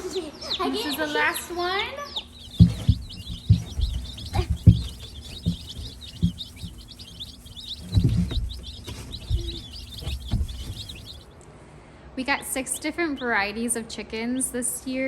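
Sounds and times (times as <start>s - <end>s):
chicks peeping: 0.0s - 11.4s
dull thumps and knocks: 2.3s - 11.2s.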